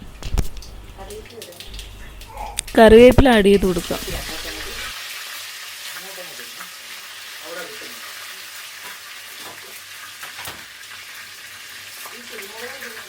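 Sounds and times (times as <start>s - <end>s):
seeds sizzling in hot oil: 3.8s - 13.0s.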